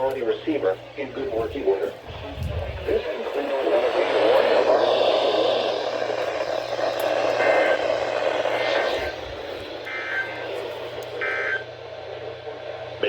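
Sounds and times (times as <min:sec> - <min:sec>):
radio static hiss: 0:00.0 - 0:13.0
two-tone data signal bursts: 0:07.4 - 0:07.9, 0:09.8 - 0:10.5, 0:11.2 - 0:11.7.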